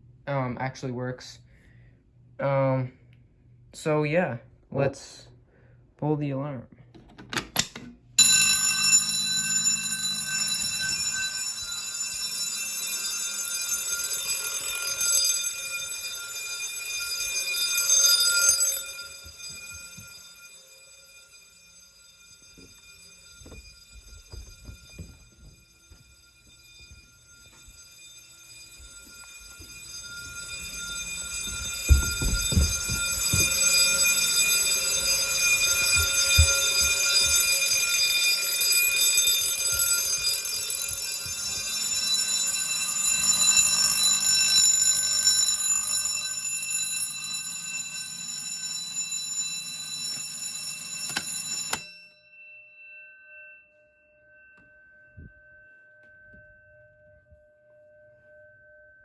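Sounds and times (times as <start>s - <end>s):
fire alarm bells ringing: 7.6s - 54.0s.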